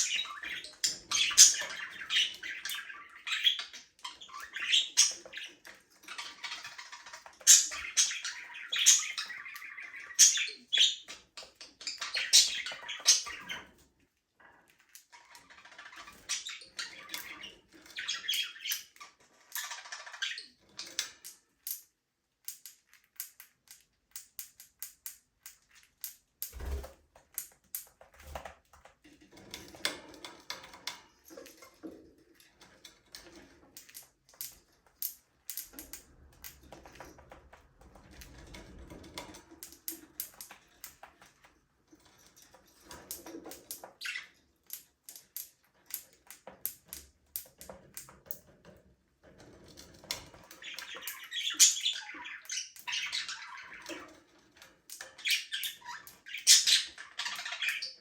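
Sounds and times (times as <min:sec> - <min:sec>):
budgerigars chirping: 0:00.0 - 0:13.7, 0:15.3 - 0:21.0, 0:50.5 - 0:54.1, 0:55.0 - 0:58.0.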